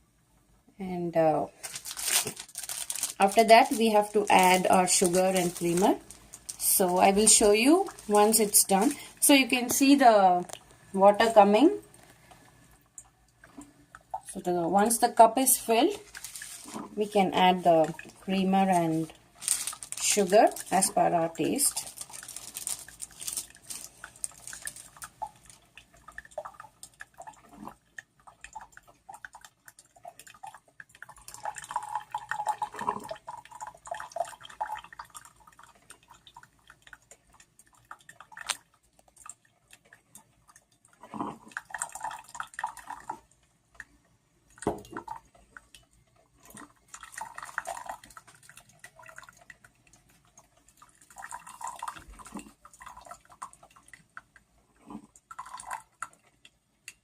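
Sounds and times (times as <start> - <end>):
coffee dripping and trickling: 1.3 - 57.0
crackle of small clicks: 10.5 - 10.8, 37.9 - 40.3.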